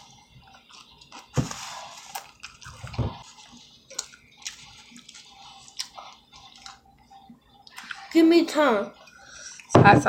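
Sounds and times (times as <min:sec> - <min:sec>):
wet chewing and mouth smacking: 0:02.1 - 0:06.9.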